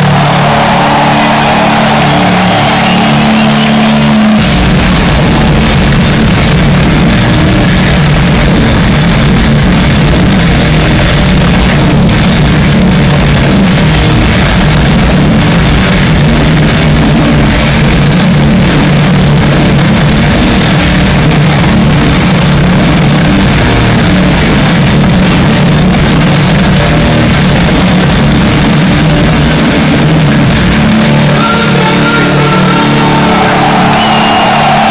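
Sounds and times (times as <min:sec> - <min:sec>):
distorted live rock band: 0:00.0 - 0:34.9.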